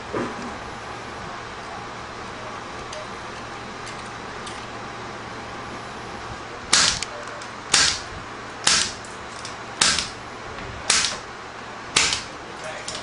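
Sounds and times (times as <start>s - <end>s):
punch-down tool snapping: 6.7s - 7.1s, 7.7s - 10.2s, 10.9s - 11.2s, 12.0s - 12.3s.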